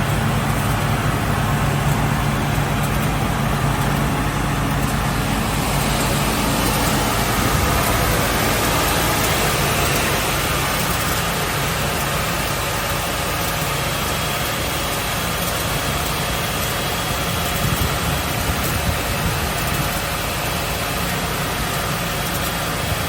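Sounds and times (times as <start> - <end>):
belt sander humming: 0.0 - 13.8.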